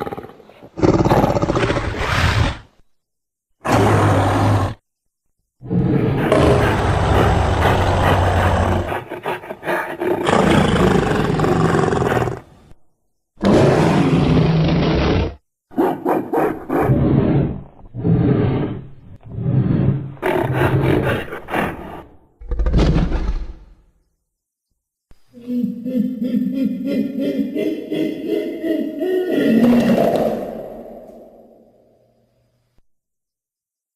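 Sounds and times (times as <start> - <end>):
deep roars and growls: 3.6 - 4.8, 5.6 - 9.3, 10.0 - 12.5, 13.4 - 15.4, 16.7 - 23.6.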